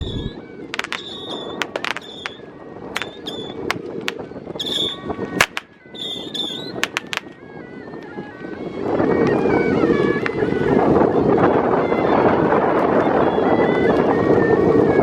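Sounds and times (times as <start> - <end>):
firecrackers cracking: 0.7 - 5.8, 6.4 - 7.4.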